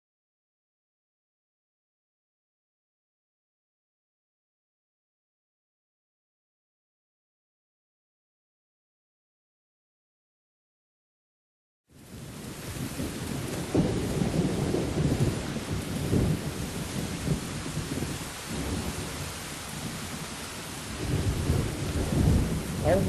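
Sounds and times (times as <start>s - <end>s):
steady rain: 11.9s - 23.0s
rolls of thunder: 12.1s - 23.0s.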